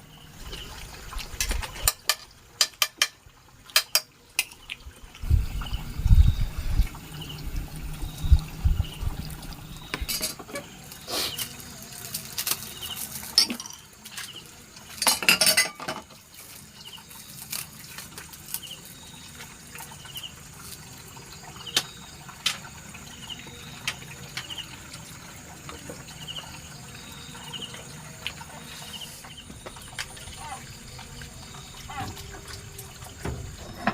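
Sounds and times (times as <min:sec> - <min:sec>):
water splashing and pouring: 0:00.0 - 0:33.9
dishes clinking: 0:01.4 - 0:04.6, 0:09.9 - 0:10.8, 0:13.3 - 0:13.9, 0:15.0 - 0:16.2, 0:33.2 - 0:33.9.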